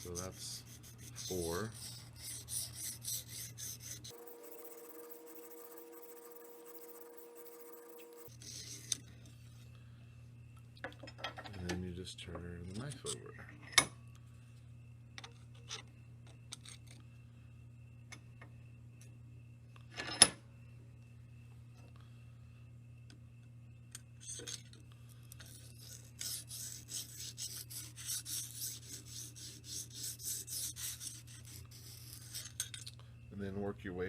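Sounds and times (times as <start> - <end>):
sharpening stone rasping on knife: 0.0 - 9.0, 25.5 - 32.6.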